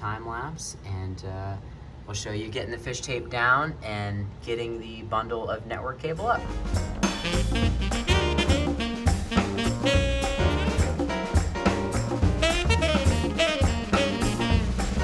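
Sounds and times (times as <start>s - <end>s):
jazz music with saxophone and brass: 6.4s - 15.0s.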